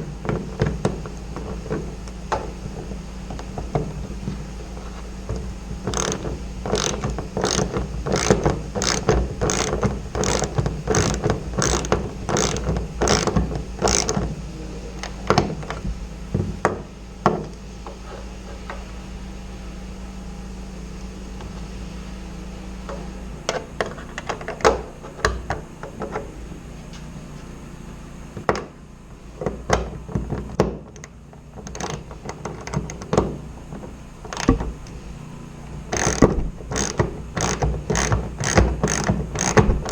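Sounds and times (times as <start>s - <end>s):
tool knocks: 0.0s - 18.8s, 35.9s - 39.9s
steady low hum: 0.0s - 39.9s
ratchet clicking: 0.2s - 15.8s, 30.8s - 35.1s, 35.7s - 39.9s.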